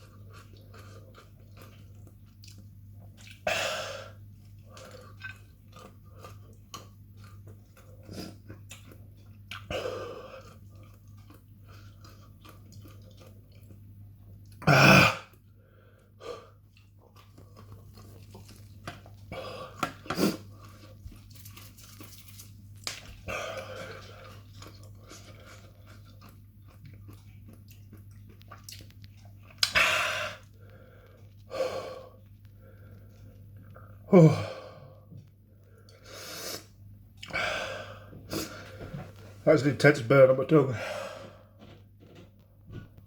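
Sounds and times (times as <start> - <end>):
man chewing crunchy food: 0.0 - 34.1, 34.9 - 39.4
noisy breaths: 29.8 - 33.5, 40.7 - 41.7.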